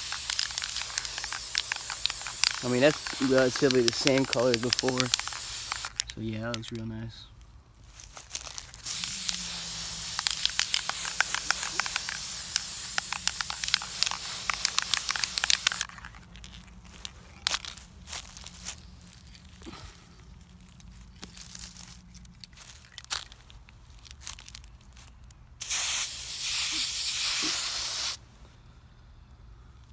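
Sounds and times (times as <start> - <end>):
spray paint can hissing: 0.0 - 6.0, 8.8 - 15.9, 25.6 - 28.2
handling clicks and knocks: 0.0 - 7.0, 10.0 - 17.8.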